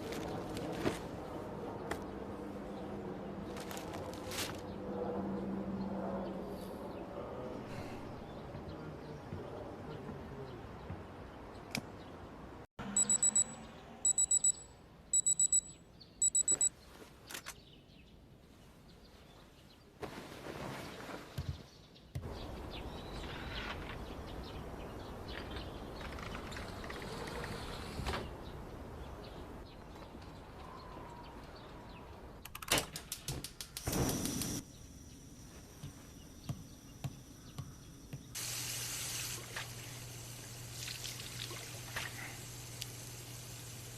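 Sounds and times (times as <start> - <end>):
handling and rustling: 0.0 - 1.2, 3.4 - 4.6
electronic alarm beeping: 12.9 - 16.7.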